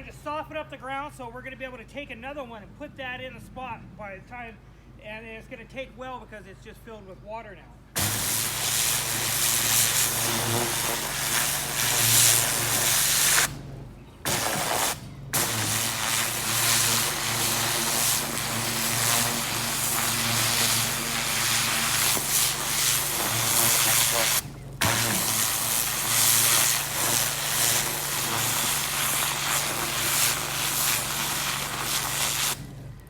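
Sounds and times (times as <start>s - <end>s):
pressure washer spray hiss: 8.0s - 13.5s, 14.3s - 32.6s
machine hum: 8.0s - 33.0s.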